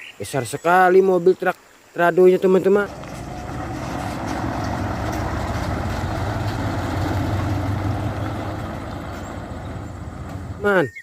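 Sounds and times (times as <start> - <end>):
truck engine idling: 2.7 - 10.8.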